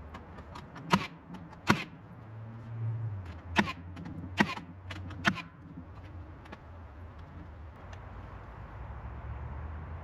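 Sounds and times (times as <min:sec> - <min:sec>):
hammer driving nails into wood: 0:00.1 - 0:02.0, 0:03.6 - 0:05.6.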